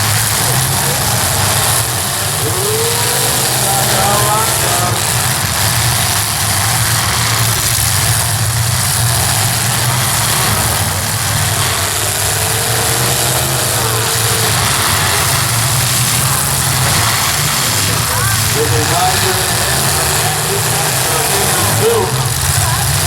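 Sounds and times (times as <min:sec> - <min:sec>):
car engines droning: 0:00.0 - 0:23.0.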